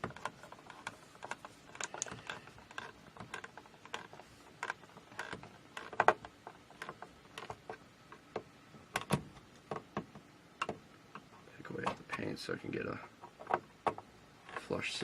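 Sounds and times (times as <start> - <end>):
screwdriver clicking and scraping: 0.1 - 6.0.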